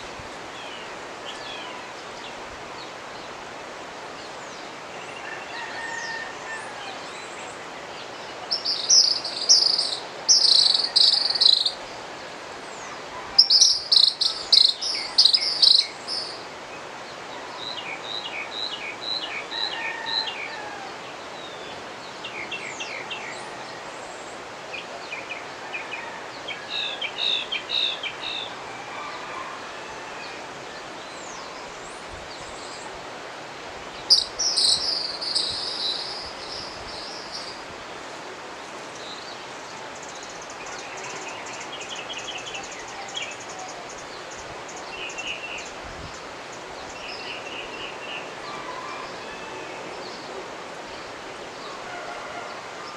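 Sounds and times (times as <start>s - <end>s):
river rushing: 0.0s - 52.9s
birds singing: 4.2s - 12.0s, 12.7s - 29.2s, 33.9s - 38.0s.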